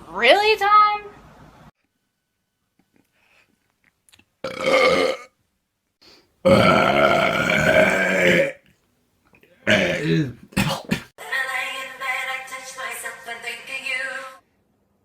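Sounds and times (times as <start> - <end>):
person belching: 4.4 - 5.3, 6.4 - 8.6, 9.7 - 11.1.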